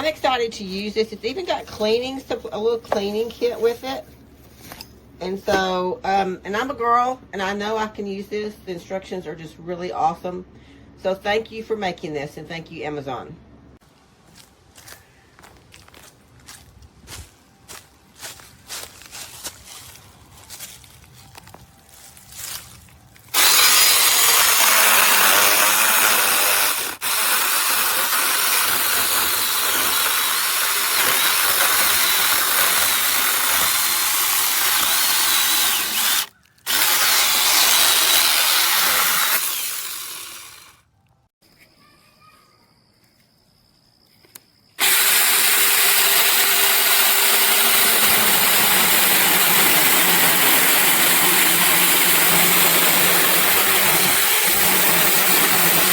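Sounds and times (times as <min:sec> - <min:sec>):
electric chainsaw running: 0:23.3 - 0:40.8, 0:44.8 - 0:55.9.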